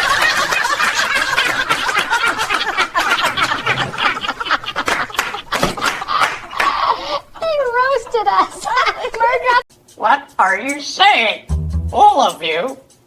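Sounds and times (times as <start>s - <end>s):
people laughing and snickering: 0.0s - 9.6s.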